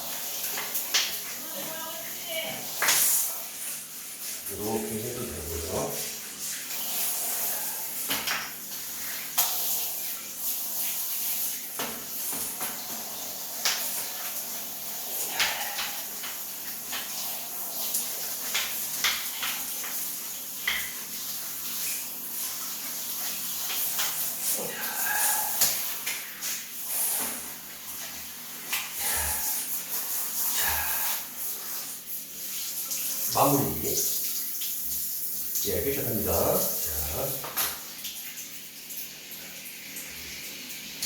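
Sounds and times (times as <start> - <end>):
brush scrubbing wet cloth: 0.0 - 8.1, 21.0 - 37.4
steady hiss: 23.2 - 32.0.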